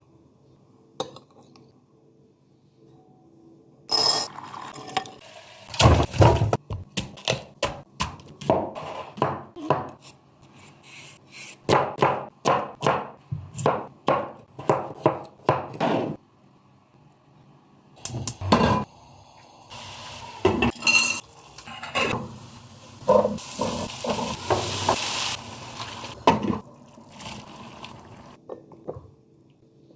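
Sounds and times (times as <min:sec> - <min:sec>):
kitchen utensils clattering: 0:20.5 - 0:22.2.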